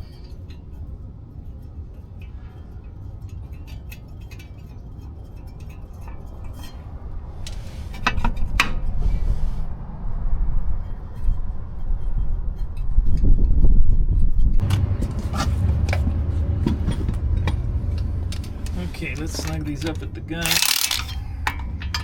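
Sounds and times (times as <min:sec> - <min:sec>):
metal nuts clinking: 0:20.4 - 0:21.2.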